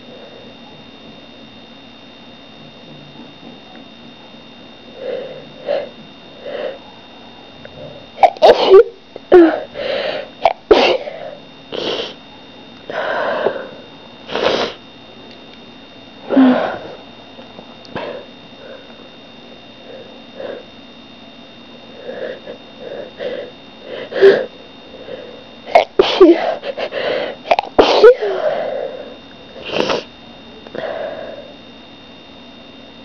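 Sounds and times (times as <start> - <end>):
person sneezing: 8.2 - 9.7, 10.4 - 11.2, 25.7 - 26.9, 27.5 - 28.6, 29.6 - 30.1.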